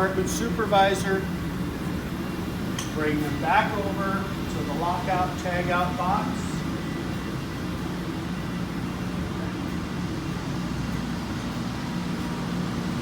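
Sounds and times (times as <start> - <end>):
low machinery hum: 0.0 - 13.0.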